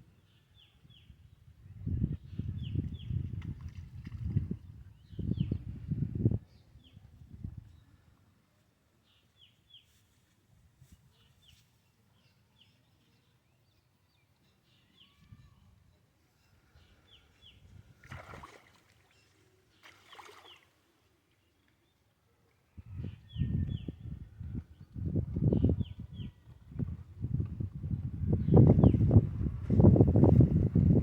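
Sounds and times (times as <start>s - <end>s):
faint bird chirps: 11.1s - 20.7s.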